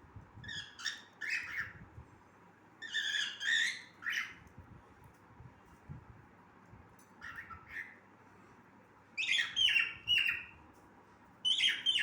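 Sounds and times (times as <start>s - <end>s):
cockatiel chirping and whistling: 0.4s - 1.8s, 2.8s - 4.4s, 7.2s - 8.0s, 9.2s - 10.6s, 11.5s - 12.0s.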